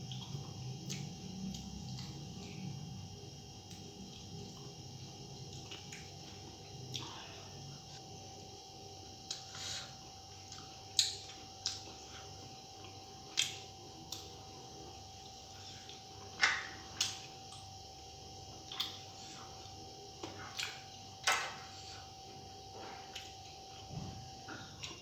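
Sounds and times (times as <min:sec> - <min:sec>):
faint steady hum: 0:00.0 - 0:25.0
person chewing with mouth smacks: 0:05.4 - 0:07.2, 0:18.6 - 0:21.4.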